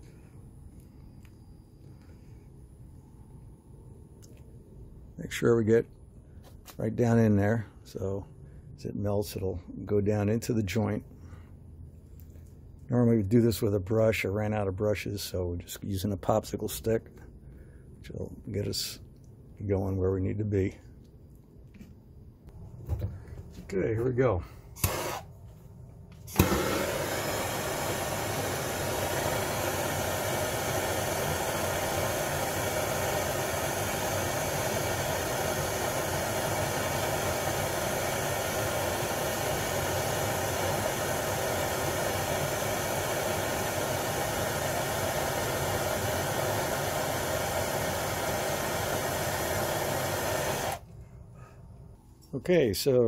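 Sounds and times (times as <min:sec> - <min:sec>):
soldering tool hissing: 0:24.8 - 0:25.3, 0:26.3 - 0:50.8.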